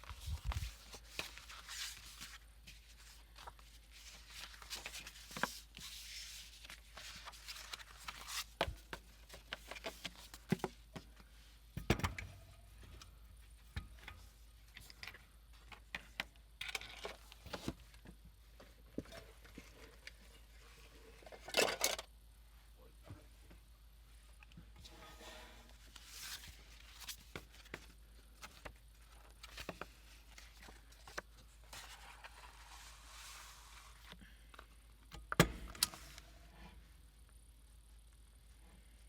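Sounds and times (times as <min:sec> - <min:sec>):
paper rustling: 0:00.0 - 0:10.6.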